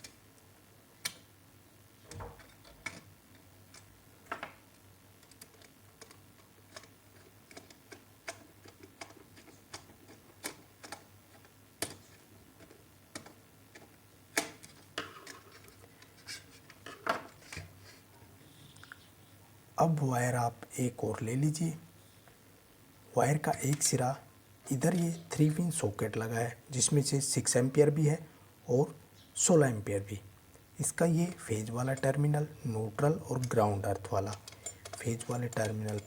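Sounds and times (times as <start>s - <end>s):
small clicks and taps of tools: 5.2s - 16.1s, 34.2s - 36.0s.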